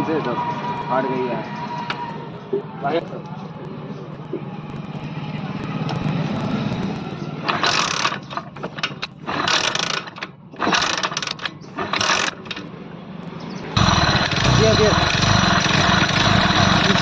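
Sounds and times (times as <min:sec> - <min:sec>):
rasping mechanical noise: 0:04.1 - 0:17.0
motorcycle engine humming: 0:13.3 - 0:17.0.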